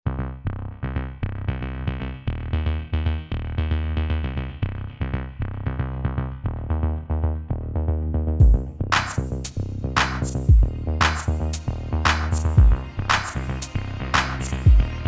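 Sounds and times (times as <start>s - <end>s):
kick drum and crash cymbal: 8.4s - 13.5s, 14.2s - 14.9s
drum-machine beat: 8.4s - 15.0s.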